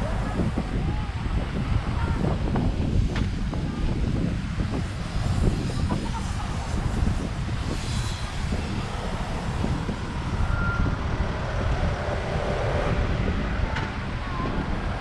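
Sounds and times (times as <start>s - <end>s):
traffic: 0.0s - 15.0s
wind buffeting microphone: 0.0s - 15.0s.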